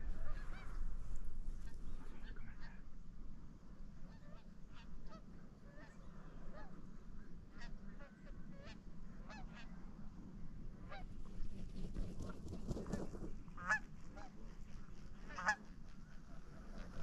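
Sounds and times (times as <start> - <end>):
geese honking: 0.0 - 0.8, 13.6 - 14.5, 15.2 - 17.0.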